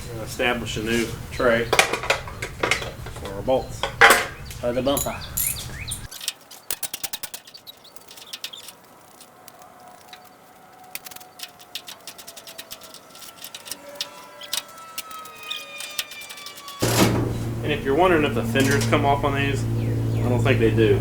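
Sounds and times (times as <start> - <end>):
metal bolts and tools clinking: 1.7 - 9.3, 10.0 - 17.6, 18.5 - 19.0.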